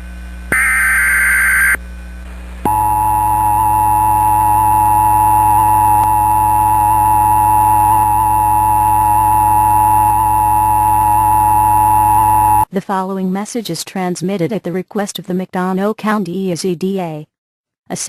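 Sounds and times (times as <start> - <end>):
two-tone attention signal: 2.7 - 12.6.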